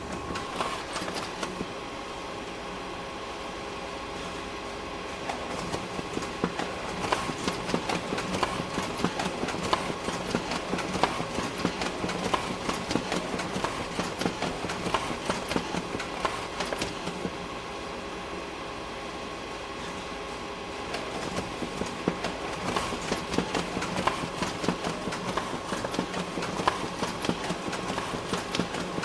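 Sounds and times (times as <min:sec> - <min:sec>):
photocopier fan hum: 0:00.0 - 0:29.0
paper feed clicking and clattering: 0:00.2 - 0:01.7, 0:05.3 - 0:17.4, 0:20.9 - 0:29.0.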